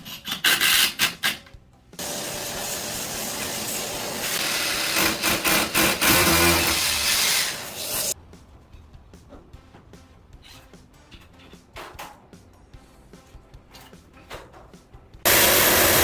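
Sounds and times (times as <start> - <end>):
tool hissing: 2.0 - 8.2, 15.3 - 16.0.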